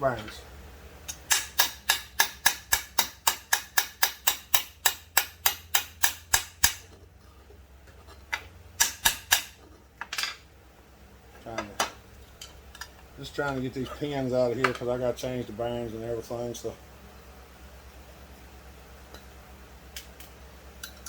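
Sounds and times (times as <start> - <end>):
tool tapping on metal: 1.1 - 7.0, 7.9 - 10.4.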